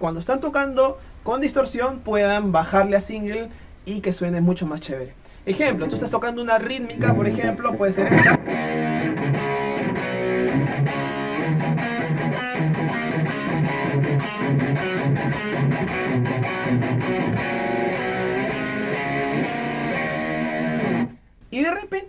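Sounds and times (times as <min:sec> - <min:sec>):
distorted electric guitar chords: 0:07.0 - 0:21.2.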